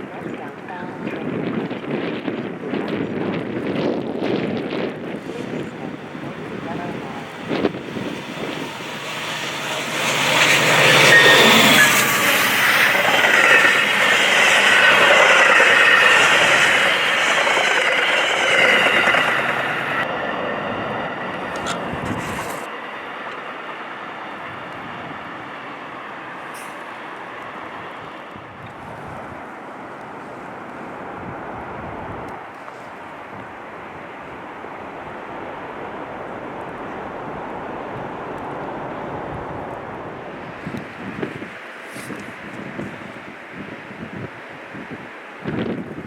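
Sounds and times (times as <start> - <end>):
train wheels rushing on rails: 5.0 - 28.5.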